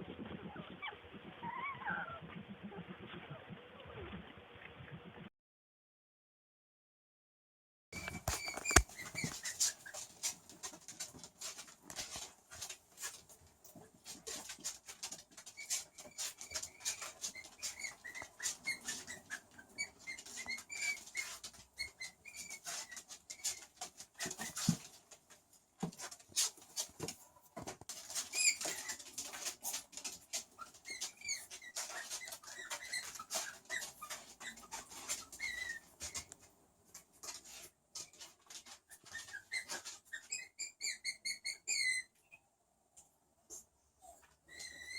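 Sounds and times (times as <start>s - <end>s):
skunk squeaking and chirping: 8.0s - 10.0s, 15.6s - 24.6s, 30.5s - 36.3s, 38.9s - 42.4s
scuffling noises: 8.0s - 18.6s.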